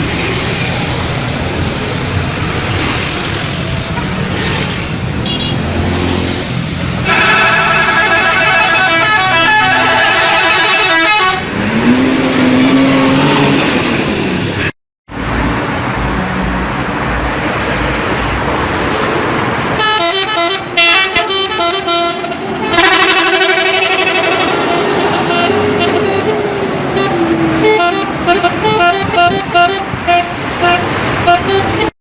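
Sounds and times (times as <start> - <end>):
road and engine noise: 0.0 - 32.0
multi-tone bus horns playing tunes: 5.2 - 5.6, 7.0 - 13.3, 19.8 - 32.0.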